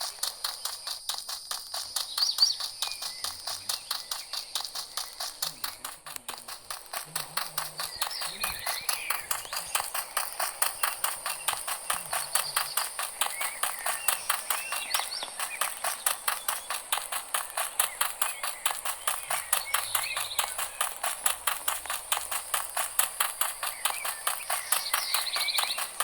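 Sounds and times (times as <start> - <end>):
fast even clicking: 0.0 - 26.0.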